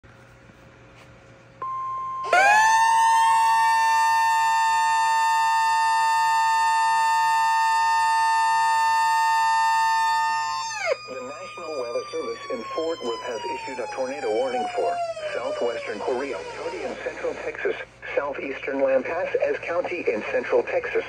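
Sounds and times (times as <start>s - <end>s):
siren-like alert chord: 1.6s - 16.9s.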